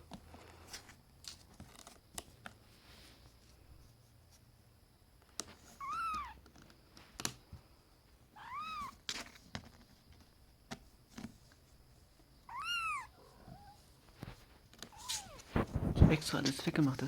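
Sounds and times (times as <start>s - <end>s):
kitten meowing: 5.8s - 6.4s, 8.4s - 9.0s, 12.5s - 13.8s.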